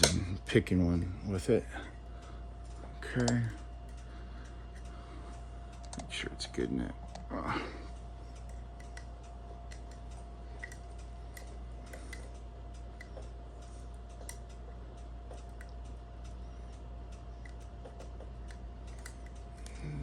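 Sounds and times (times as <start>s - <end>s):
steady hum: 0.0s - 20.0s
metallic ticks of lock picking: 3.2s - 4.0s, 8.4s - 13.2s.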